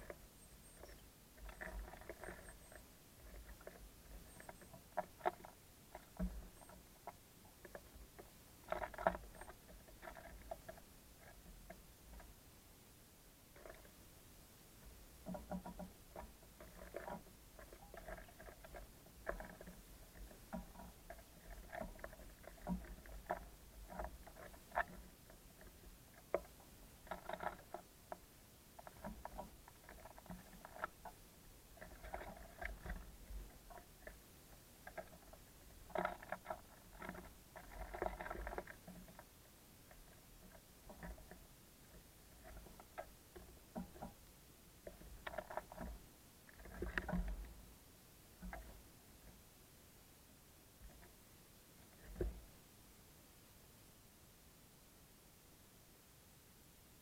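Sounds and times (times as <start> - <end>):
birds pecking on wooden feeder: 0.0 - 12.5, 13.5 - 47.7, 48.3 - 49.4, 51.8 - 52.5.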